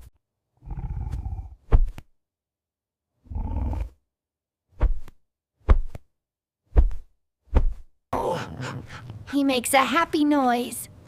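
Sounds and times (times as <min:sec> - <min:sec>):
cartoon cat growling: 0:03.2 - 0:04.0.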